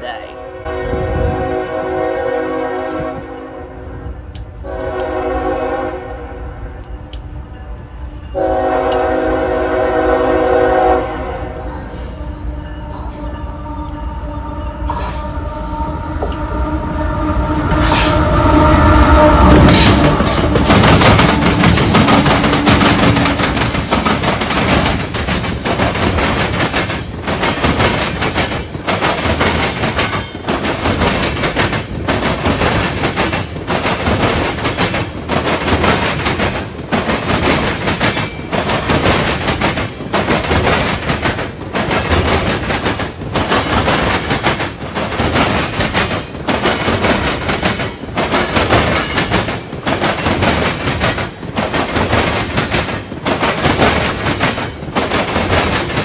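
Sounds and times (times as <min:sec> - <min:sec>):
train wheels clattering: 0:12.9 - 0:56.0.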